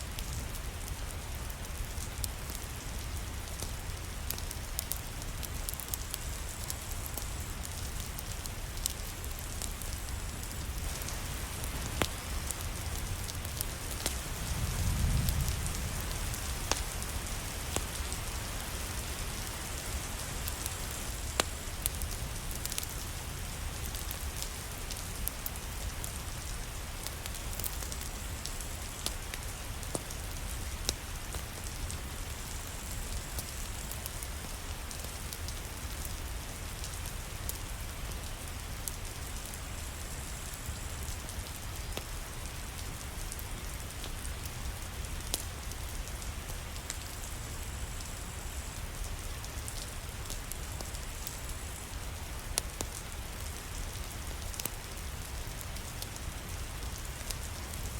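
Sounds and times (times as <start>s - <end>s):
sharp ticks of raindrops: 0.0s - 57.9s
steady rain hiss: 0.0s - 57.9s.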